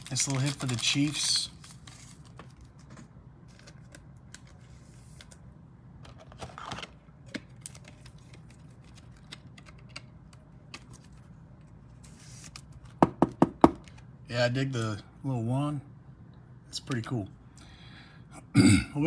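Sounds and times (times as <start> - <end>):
card rustle: 0.0 - 13.0.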